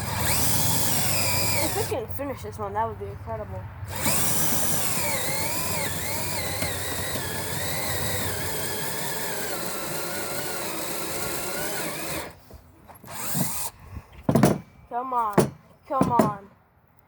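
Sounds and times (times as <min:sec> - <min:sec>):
cordless drill boring into wood: 0:00.0 - 0:02.0, 0:03.9 - 0:12.4, 0:13.0 - 0:13.8.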